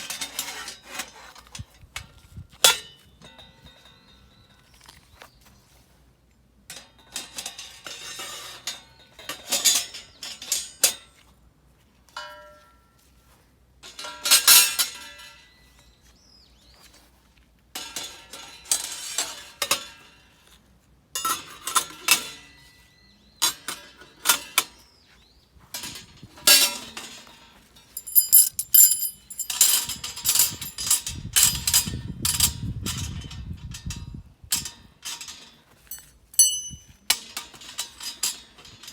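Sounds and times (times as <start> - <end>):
metal grill parts clinking: 13.8 - 15.4, 25.8 - 34.0, 34.6 - 38.9.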